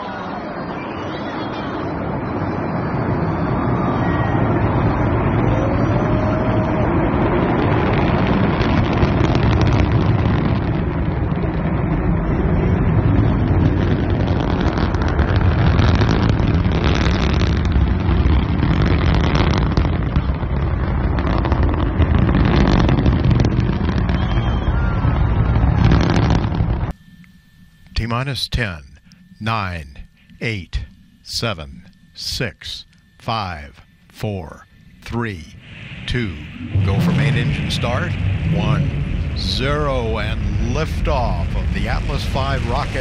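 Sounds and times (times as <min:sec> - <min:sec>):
rocket engine rumble: 0:00.0 - 0:43.0.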